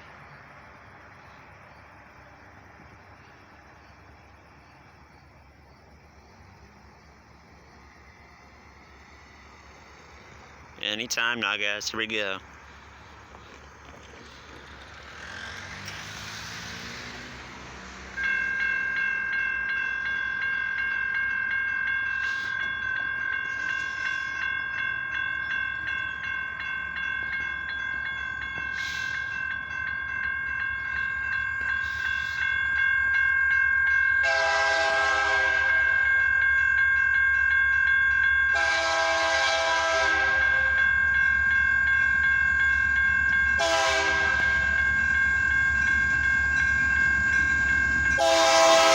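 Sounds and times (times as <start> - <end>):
railroad crossing bell ringing: 6.2 - 48.9
locomotive air horn blasts: 34.2 - 36.0, 38.6 - 40.8, 43.6 - 44.7, 48.2 - 48.9.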